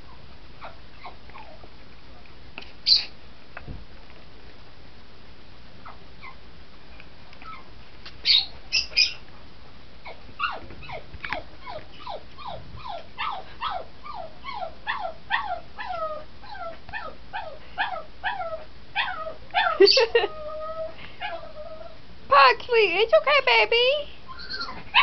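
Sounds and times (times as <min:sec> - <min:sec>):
dog whimpering: 0:10.0 - 0:22.0, 0:24.3 - 0:25.0
shrill high calls: 0:24.3 - 0:24.8.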